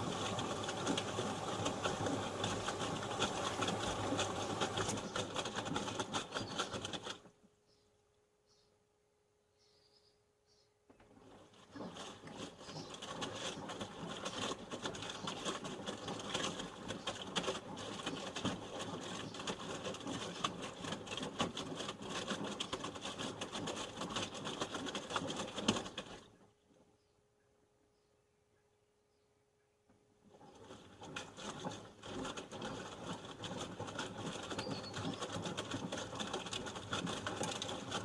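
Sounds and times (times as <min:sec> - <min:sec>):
washing machine drum tumbling laundry: 0:00.0 - 0:07.3, 0:11.0 - 0:26.3, 0:30.3 - 0:38.0.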